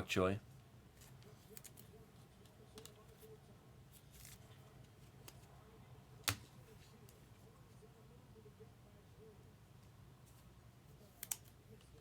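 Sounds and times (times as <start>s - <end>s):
trading cards and wrappers handled: 0.9s - 5.7s.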